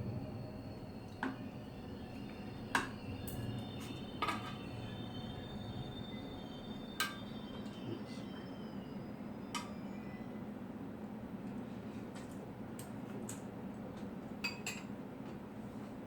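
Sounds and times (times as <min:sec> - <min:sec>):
low steady hum: 0:00.0 - 0:11.6
utensils clinking against a bowl: 0:14.4 - 0:14.9.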